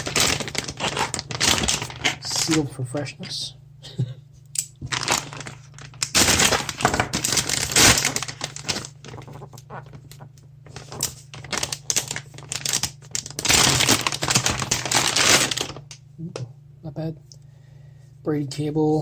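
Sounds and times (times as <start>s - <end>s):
plastic packaging crinkling: 0.0s - 3.1s, 4.7s - 16.0s.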